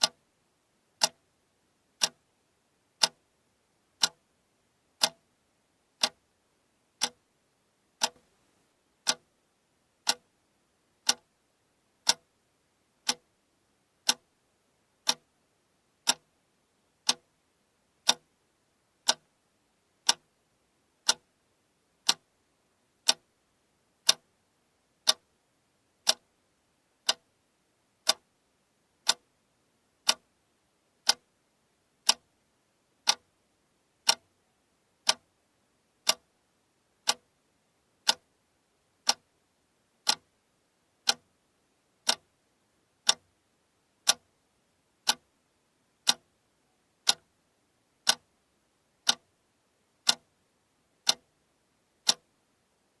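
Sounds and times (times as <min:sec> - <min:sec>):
alarm clock ticking: 0:08.0 - 0:08.2, 0:20.0 - 0:20.2.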